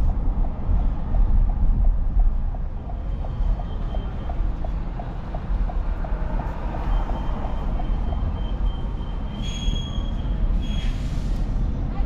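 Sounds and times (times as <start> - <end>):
vehicle road rumble: 0.0 - 12.0.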